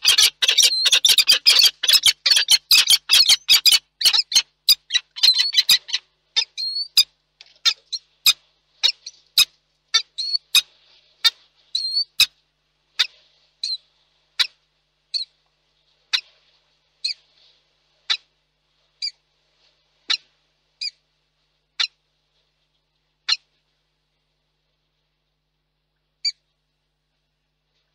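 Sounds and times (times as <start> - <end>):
falcon chipping calls: 0.0 - 6.0.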